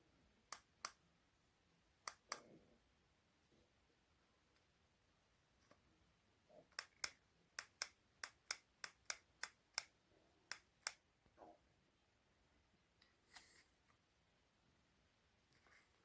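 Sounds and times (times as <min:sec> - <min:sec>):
sharp crisp clicks: 0:00.5 - 0:01.0, 0:02.0 - 0:02.5, 0:06.7 - 0:09.9, 0:10.5 - 0:11.0.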